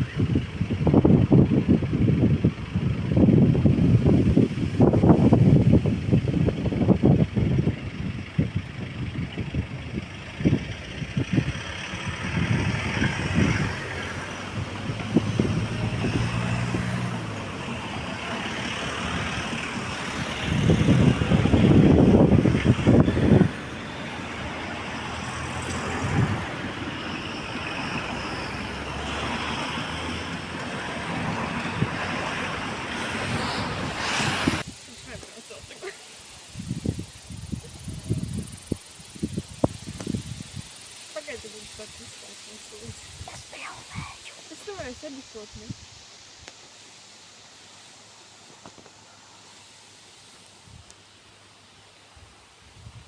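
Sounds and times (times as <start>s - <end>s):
wind buffeting microphone: 0.0s - 46.5s, 52.1s - 53.0s
train engine droning: 5.6s - 35.2s.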